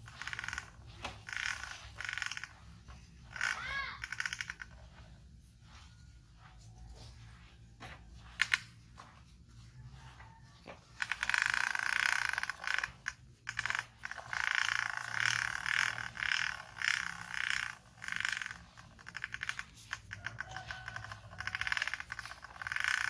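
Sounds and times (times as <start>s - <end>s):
plastic toy truck rattling: 10.8s - 23.0s.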